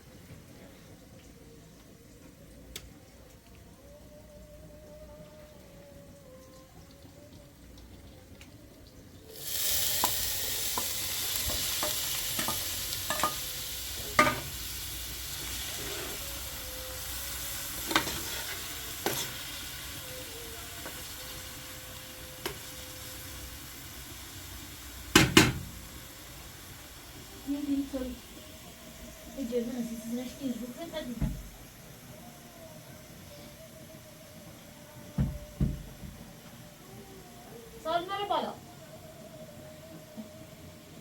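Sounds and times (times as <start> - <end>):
food sizzling in a pan: 4.8 - 41.0
utensil knocking against pan: 25.2 - 25.7.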